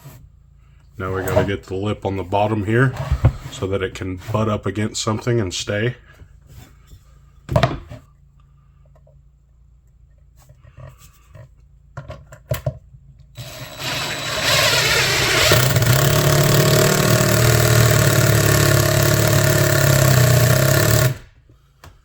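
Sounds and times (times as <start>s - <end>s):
power tool motor humming: 13.4s - 21.3s.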